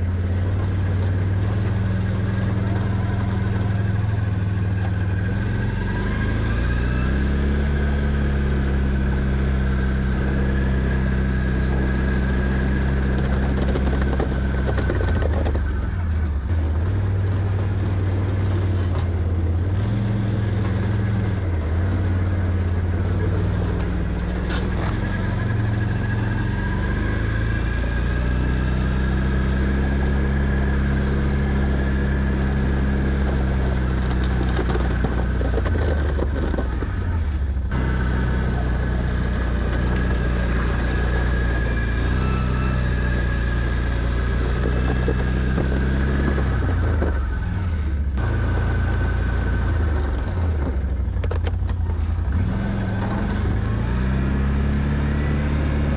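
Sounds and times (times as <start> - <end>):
engine running under load: 0.0 - 55.9.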